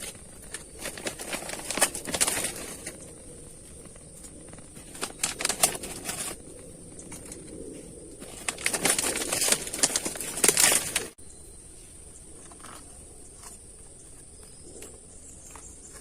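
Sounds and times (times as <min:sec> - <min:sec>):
tent fabric rustling and flapping: 0:00.0 - 0:07.4, 0:08.2 - 0:11.2.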